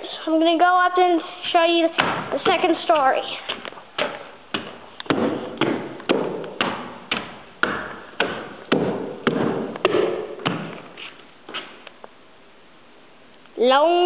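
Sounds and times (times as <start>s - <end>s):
footsteps on stairs: 1.8s - 11.8s.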